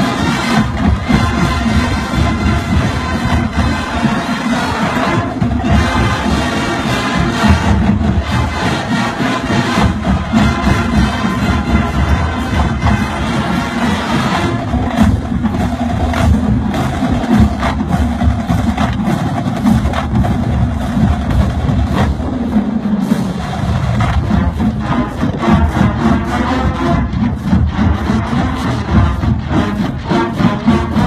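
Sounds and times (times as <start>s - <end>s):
sustained horn tones: 0.0s - 15.4s, 23.8s - 31.0s
drum and percussion strikes: 0.0s - 31.0s
marching band playing: 0.0s - 31.0s.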